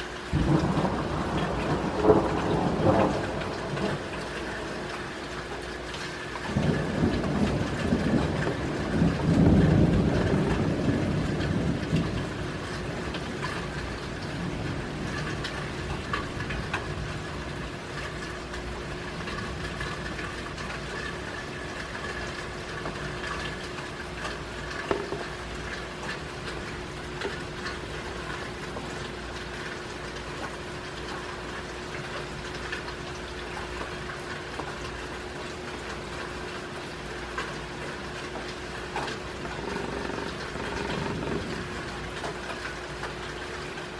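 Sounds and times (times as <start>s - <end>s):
steady rain falling: 0.0s - 43.9s
water drips and taps: 17.9s - 43.9s.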